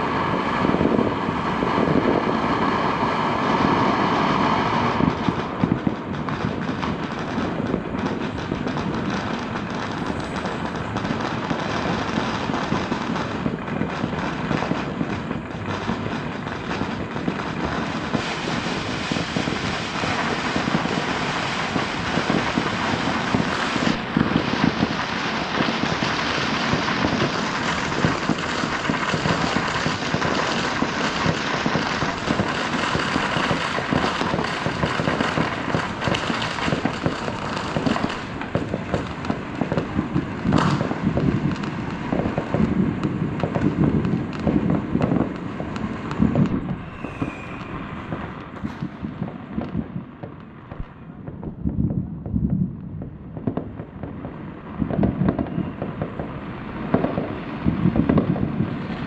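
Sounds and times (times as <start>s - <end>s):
firecrackers crackling: 0.0s - 59.0s
steady pitched whine: 45.9s - 49.2s.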